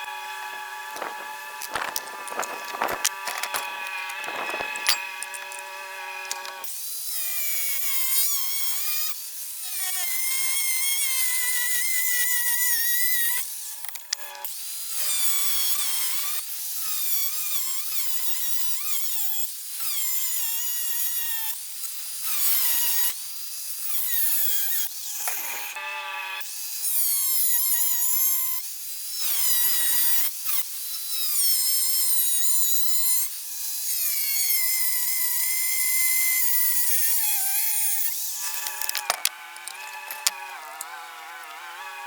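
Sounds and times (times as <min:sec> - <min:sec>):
angle grinder cutting steel: 0:00.8 - 0:12.6, 0:36.8 - 0:42.0.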